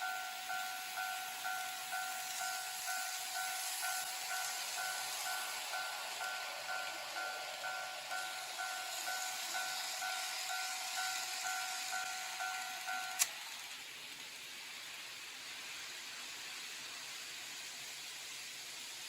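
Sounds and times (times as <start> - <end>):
level crossing warning bell: 0.0 - 13.3
faint steady hiss: 0.0 - 19.0
click: 13.1 - 13.3.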